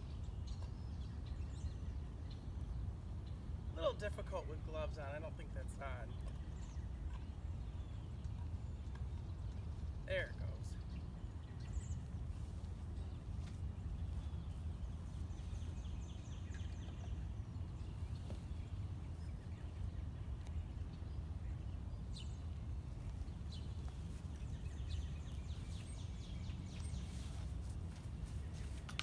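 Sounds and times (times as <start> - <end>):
low outdoor rumble: 0.0 - 29.0
small bird chirping trills: 5.8 - 29.0.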